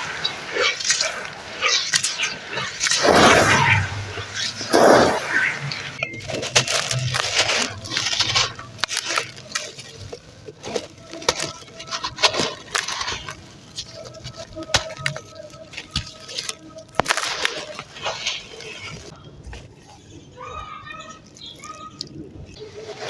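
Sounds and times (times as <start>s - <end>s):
sand crumbling into water: 0.0s - 13.4s.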